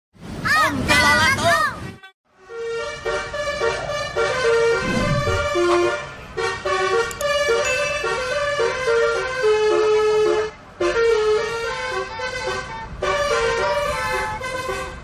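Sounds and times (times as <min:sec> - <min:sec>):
multi-tone bus horn melody: 0:01.8 - 0:15.0.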